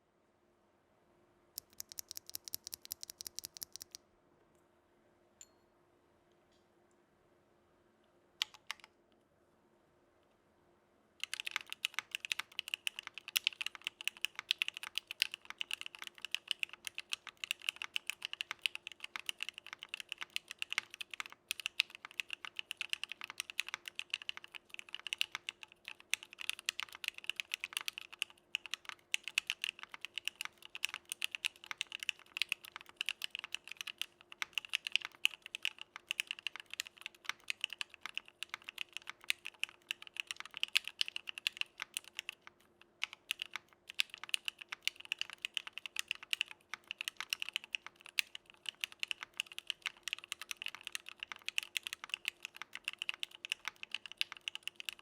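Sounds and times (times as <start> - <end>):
fast typing on mechanical keyboard: 1.6 - 4.0, 8.4 - 8.9, 11.2 - 55.0.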